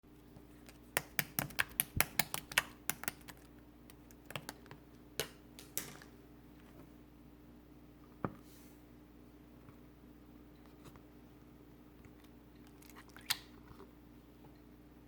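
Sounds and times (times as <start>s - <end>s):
slime clicking and popping: 1.0s - 3.4s.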